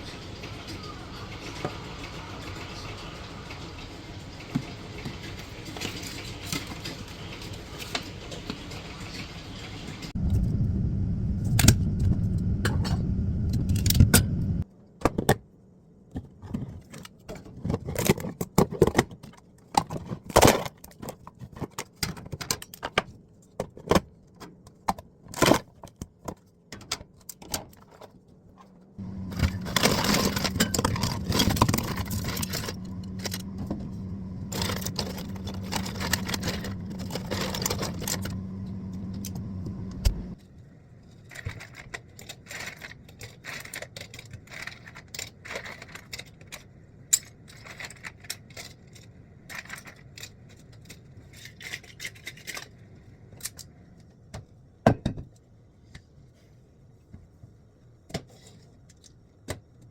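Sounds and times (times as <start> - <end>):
running noise with low hum: 0.0 - 59.0
hard objects clinking and knocking: 29.0 - 38.4.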